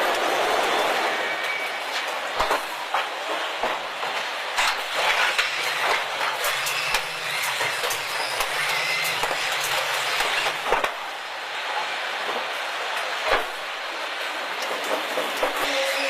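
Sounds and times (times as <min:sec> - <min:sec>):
machine clattering and knocking: 0:02.4 - 0:11.1, 0:14.6 - 0:15.7.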